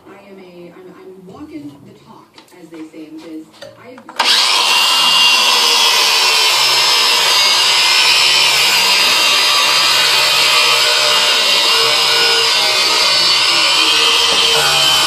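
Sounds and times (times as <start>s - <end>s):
angle grinder grinding metal: 4.2s - 15.0s.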